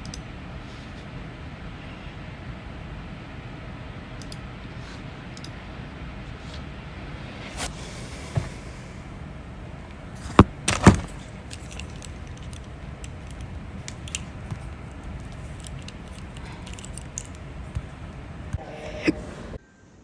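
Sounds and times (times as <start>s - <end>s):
faint clicks: 0.0s - 0.3s, 4.2s - 4.4s, 5.3s - 5.6s, 11.2s - 18.6s
steady hiss: 0.0s - 20.0s
person hiccuping: 18.6s - 19.5s.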